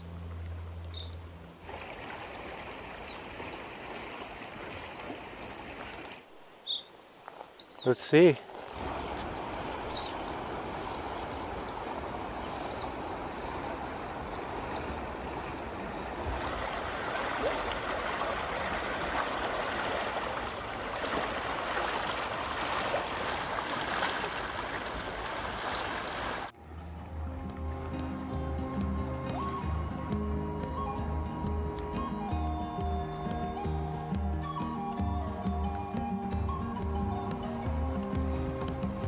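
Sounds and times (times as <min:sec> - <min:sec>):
river water rushing: 0:00.0 - 0:06.6, 0:07.4 - 0:39.0
music: 0:26.6 - 0:39.0.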